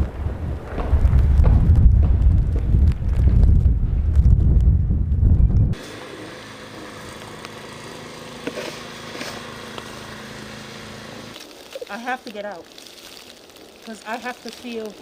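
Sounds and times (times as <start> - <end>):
wind buffeting microphone: 0.0 - 5.8
engine drone: 5.5 - 11.4.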